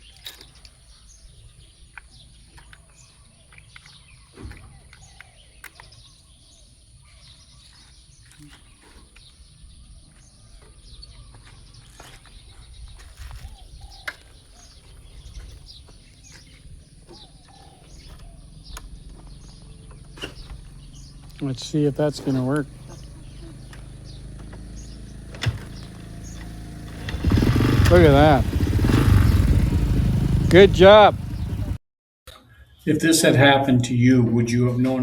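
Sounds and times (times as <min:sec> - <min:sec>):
birds chirping: 0:00.0 - 0:31.8
low outdoor rumble: 0:15.0 - 0:31.8.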